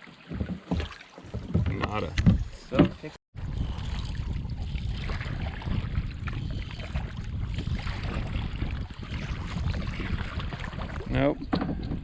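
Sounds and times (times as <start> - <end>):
kayak paddle in water: 0.0 - 12.0
wind rumble on microphone: 1.4 - 12.0.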